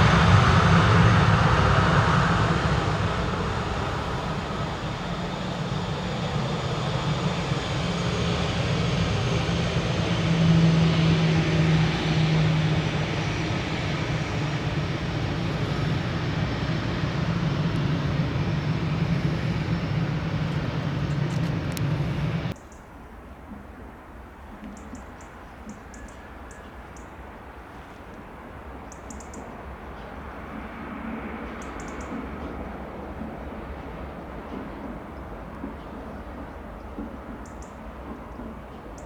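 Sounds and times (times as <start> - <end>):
jet engines roaring: 0.0 - 22.6
faint jet engine whine: 0.0 - 22.7, 25.1 - 39.0.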